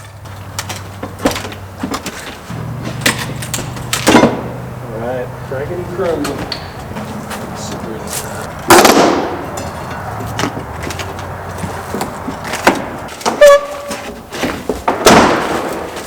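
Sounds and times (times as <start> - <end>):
wood cracking and crashing: 8.6 - 16.0.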